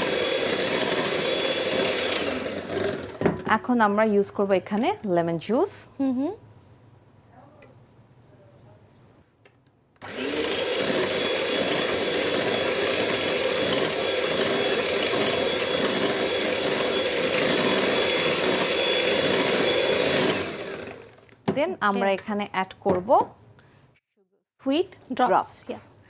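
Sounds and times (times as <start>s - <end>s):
electric hand mixer whipping cream: 0.0s - 3.4s, 10.0s - 21.2s.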